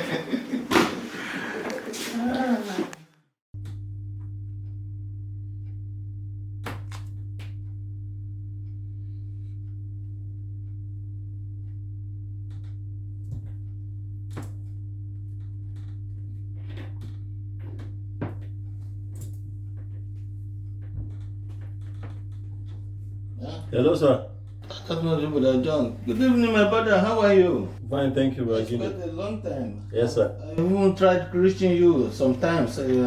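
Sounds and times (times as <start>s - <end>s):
higher hum tone: 3.6s - 33.0s
low electrical hum: 3.6s - 33.0s.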